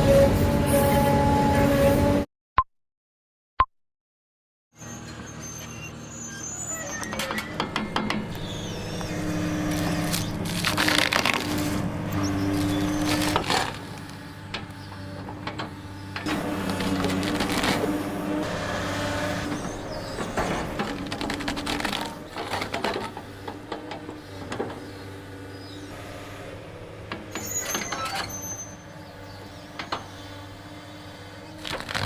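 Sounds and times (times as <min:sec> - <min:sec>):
tree-cutting machine engine: 0:07.0 - 0:32.0
sharp cracks and knocks: 0:09.7 - 0:11.7, 0:20.2 - 0:24.8.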